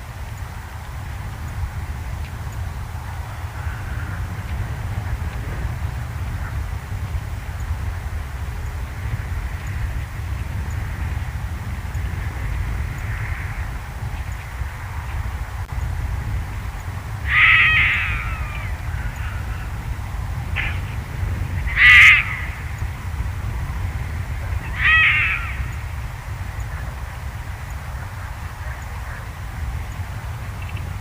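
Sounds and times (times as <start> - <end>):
steady low rumble: 0.0 - 31.0
harsh animal calls: 17.2 - 22.8, 24.3 - 26.0.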